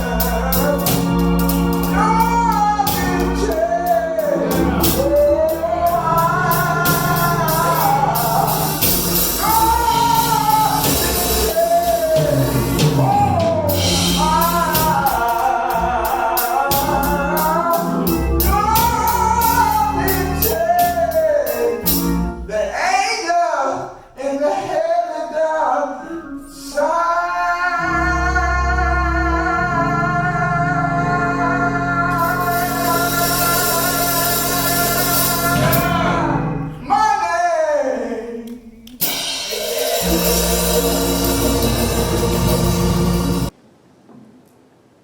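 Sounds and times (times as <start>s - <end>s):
percussion beat: 0.0s - 22.5s, 38.9s - 43.5s
instrumental accompaniment: 0.0s - 22.6s, 27.8s - 36.9s, 38.9s - 43.5s
person singing: 0.0s - 43.5s.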